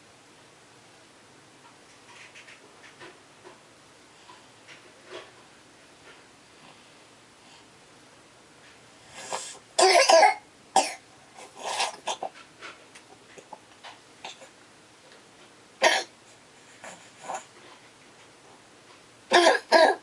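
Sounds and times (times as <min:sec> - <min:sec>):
child coughing: 0:09.8 - 0:11.0, 0:15.8 - 0:16.1, 0:19.3 - 0:20.0.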